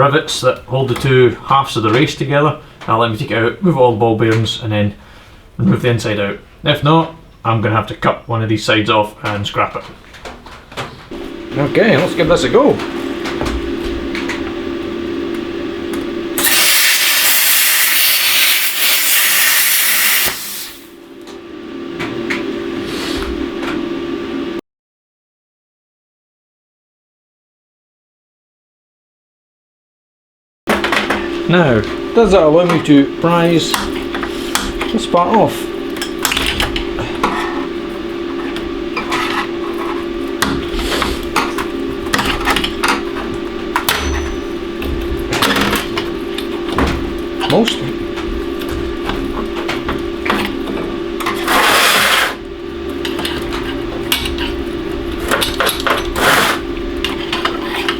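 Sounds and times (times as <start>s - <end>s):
machine hum: 9.1s - 24.6s, 30.7s - 57.9s
plasma torch hissing: 16.4s - 21.0s, 51.4s - 52.4s
metal clanking and scraping: 38.4s - 57.9s.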